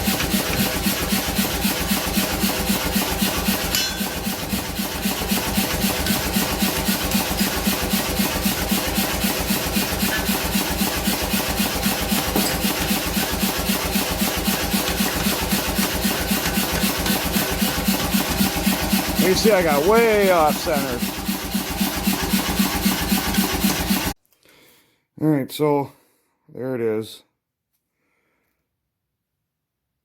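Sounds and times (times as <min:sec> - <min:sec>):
machine hum: 0:00.0 - 0:24.2
machine rhythmic strokes: 0:00.0 - 0:24.2.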